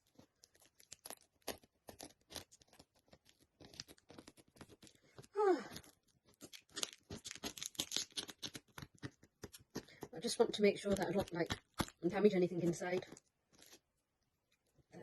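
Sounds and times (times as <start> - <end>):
paper and tape tearing: 5.6 - 9.2.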